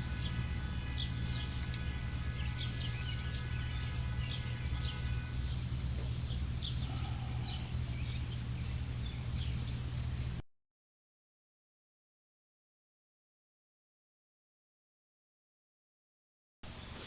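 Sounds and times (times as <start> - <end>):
small birds chirping: 0.0 - 10.4
steady low hum: 0.0 - 10.4.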